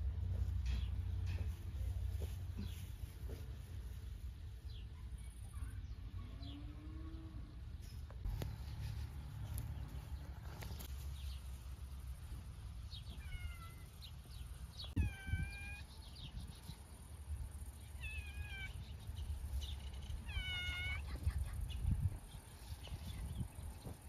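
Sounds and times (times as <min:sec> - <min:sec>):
cat meowing: 0:13.1 - 0:13.9, 0:20.2 - 0:21.0.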